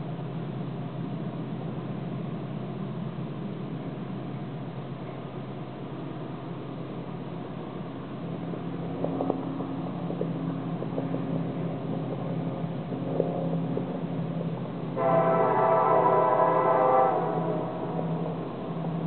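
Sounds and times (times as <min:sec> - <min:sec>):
locomotive engine drone: 0:00.0 - 0:19.0
locomotive air horn: 0:15.0 - 0:18.5.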